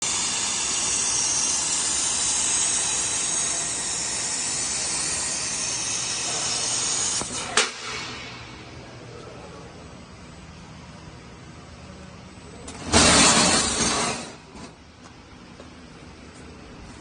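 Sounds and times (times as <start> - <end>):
laser cutter gas jet hissing: 0.0 - 8.0
sharp snap: 7.2 - 8.3.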